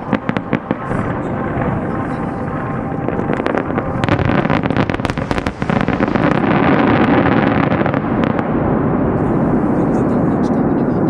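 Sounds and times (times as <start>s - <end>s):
fireworks crackling pops: 0.0s - 8.6s
steady background rumble: 0.0s - 11.0s.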